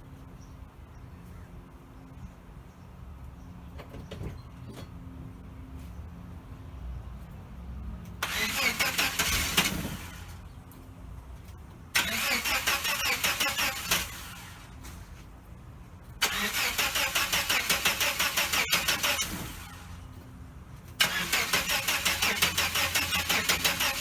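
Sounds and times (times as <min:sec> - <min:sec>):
car starter cranking engine: 0:08.2 - 0:10.4, 0:12.0 - 0:15.0, 0:16.2 - 0:20.1, 0:20.9 - 0:24.0.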